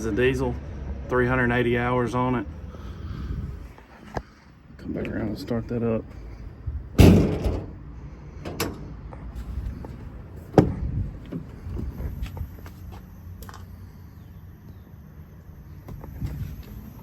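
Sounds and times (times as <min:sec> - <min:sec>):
low steady hum: 0:01.1 - 0:17.0
heavy thud: 0:06.9 - 0:07.8, 0:10.6 - 0:11.0
metal clicks and knocks: 0:07.0 - 0:07.8, 0:08.4 - 0:09.0.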